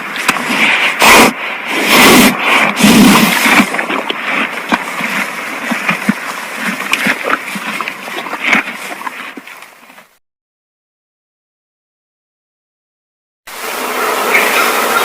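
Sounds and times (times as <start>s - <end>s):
water splashing and sloshing: 1.3s - 10.2s.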